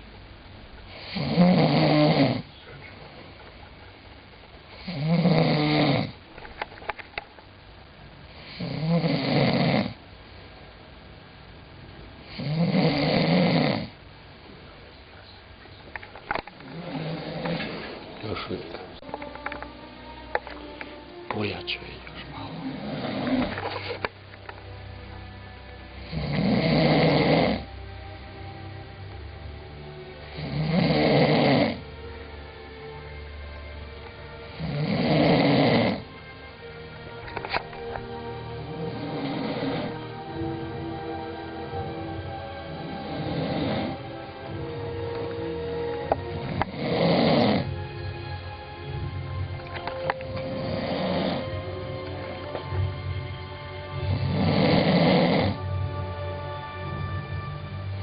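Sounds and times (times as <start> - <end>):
person snoring: 0.9 - 2.5, 4.8 - 6.2, 8.4 - 10.0, 12.3 - 14.0, 16.7 - 18.6, 22.2 - 24.0, 26.0 - 27.7, 30.2 - 31.9, 34.5 - 36.1, 38.8 - 40.1, 42.7 - 44.0, 46.3 - 47.8, 50.4 - 51.6, 53.9 - 55.7.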